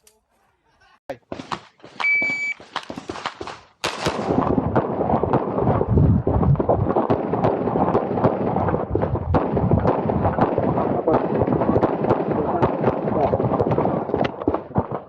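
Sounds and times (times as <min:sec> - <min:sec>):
handgun shots: 0:01.3 - 0:04.4
shot timer beep: 0:02.0 - 0:02.6.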